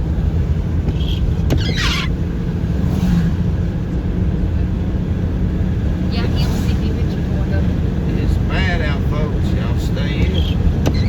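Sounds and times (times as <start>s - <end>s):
car road and engine rumble: 0.0s - 11.0s
brief falling squeak: 1.0s - 2.1s.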